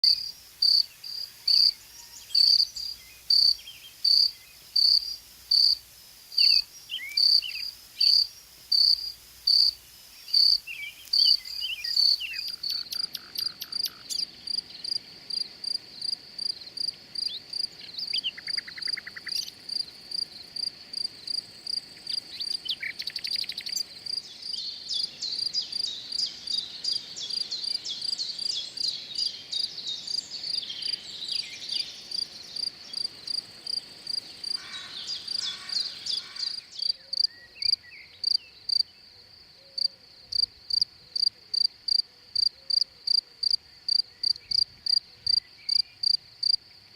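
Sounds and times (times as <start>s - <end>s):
cricket chirping: 0.0s - 46.9s
birds trilling and chirping: 34.6s - 37.2s.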